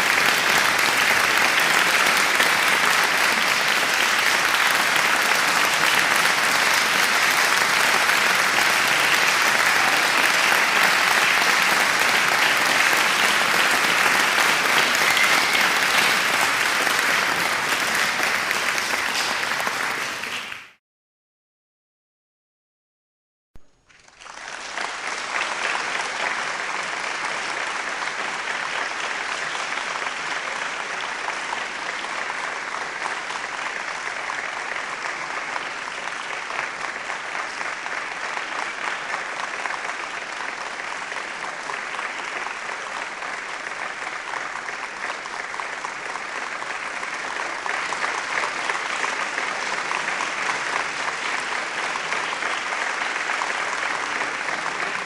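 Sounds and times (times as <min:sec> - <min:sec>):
audience applause: 0:00.0 - 0:20.8, 0:23.8 - 0:55.0.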